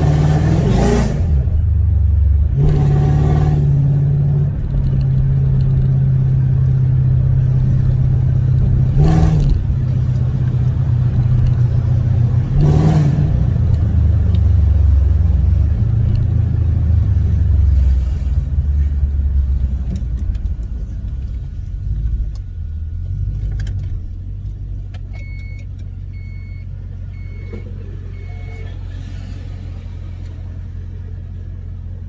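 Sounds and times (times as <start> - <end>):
car engine low rumble: 0.0 - 32.0
short beeps: 25.2 - 28.8.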